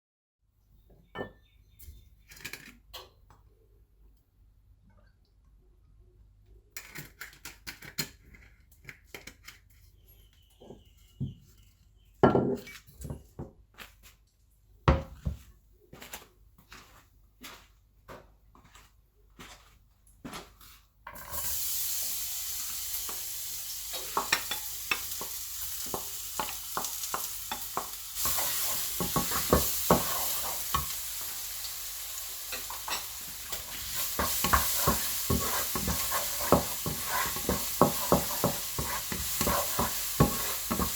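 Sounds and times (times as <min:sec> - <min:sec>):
food sizzling in hot oil: 0:21.2 - 0:40.9
utensil knocking against pan: 0:34.2 - 0:40.9.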